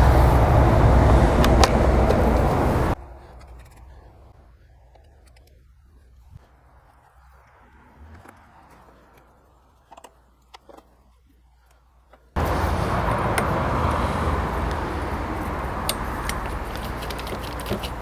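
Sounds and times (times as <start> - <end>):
lawnmower engine running: 0.0 - 3.0, 12.4 - 18.0.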